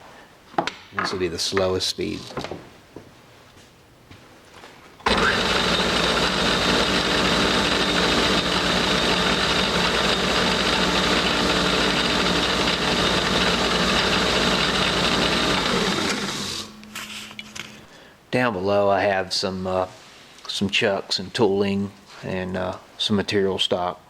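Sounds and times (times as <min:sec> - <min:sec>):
metal lathe running: 0:05.1 - 0:16.7.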